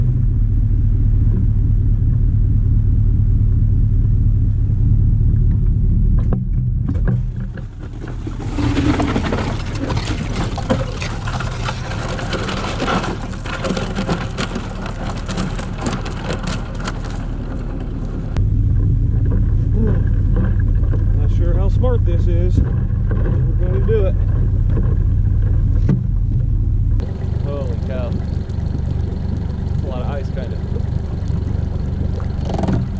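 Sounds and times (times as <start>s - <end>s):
outboard motor humming: 0.0s - 32.9s
ice crunching against hull: 7.2s - 18.4s, 19.2s - 32.9s.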